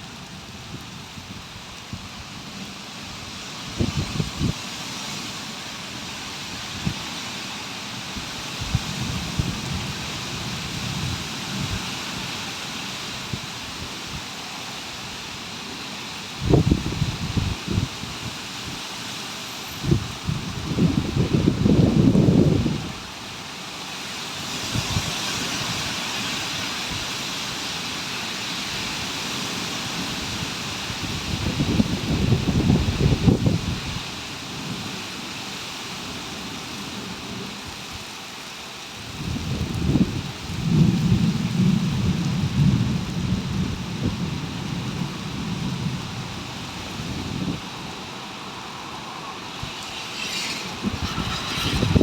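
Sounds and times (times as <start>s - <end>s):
rain hissing: 0.0s - 52.0s
storm wind rushing: 19.8s - 23.1s, 45.8s - 52.0s
rolling thunder rumble: 49.2s - 52.0s.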